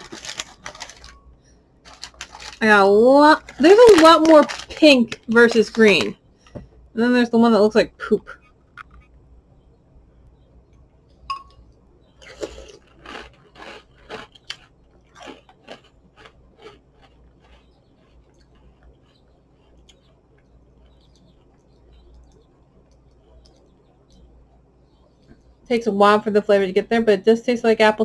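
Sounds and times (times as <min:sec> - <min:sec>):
person chewing crunchy cereal: 0:00.0 - 0:01.2, 0:01.9 - 0:06.1, 0:12.2 - 0:24.2.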